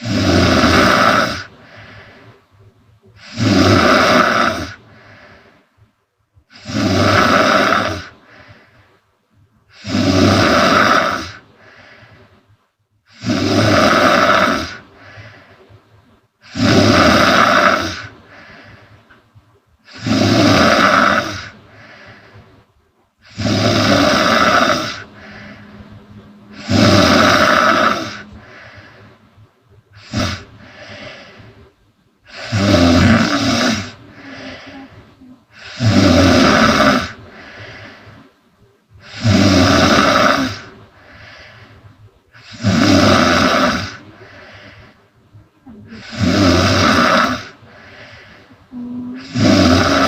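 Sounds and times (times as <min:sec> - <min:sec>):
woman snoring loudly: 0:00.0 - 0:01.8, 0:03.2 - 0:04.8, 0:06.5 - 0:08.2, 0:09.7 - 0:11.4, 0:13.1 - 0:14.8, 0:16.4 - 0:18.1, 0:19.9 - 0:21.6, 0:23.2 - 0:29.2, 0:30.0 - 0:31.2, 0:32.3 - 0:37.2, 0:39.0 - 0:40.7, 0:42.4 - 0:44.1, 0:45.7 - 0:48.0, 0:48.7 - 0:50.0.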